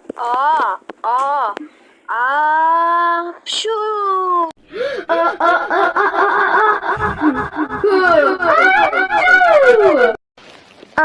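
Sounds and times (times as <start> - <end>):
cartoon voices crying out: 6.6 - 10.2.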